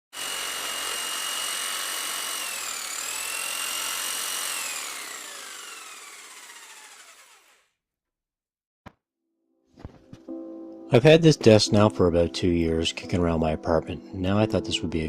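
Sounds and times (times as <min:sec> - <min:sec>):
electric sander whining: 0:00.1 - 0:07.6.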